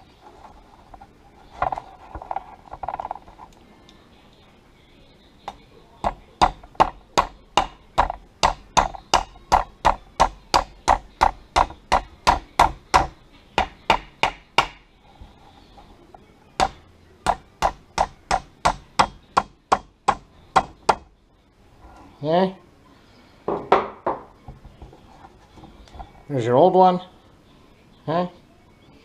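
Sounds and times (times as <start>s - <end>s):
small hammer tapping: 5.5s - 14.8s, 16.6s - 21.1s.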